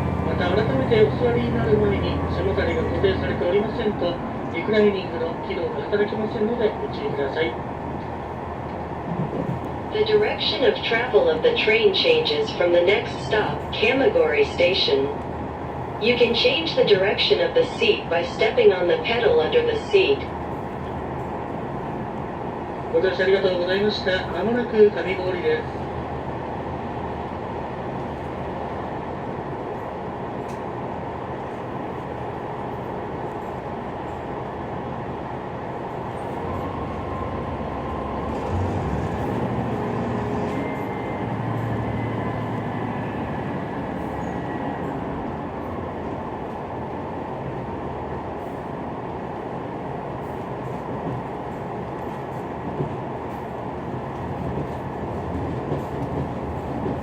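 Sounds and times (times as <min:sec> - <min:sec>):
diesel engine rumble: 0:00.0 - 0:09.0
train wheels on rails: 0:07.9 - 0:14.2, 0:27.6 - 0:57.0.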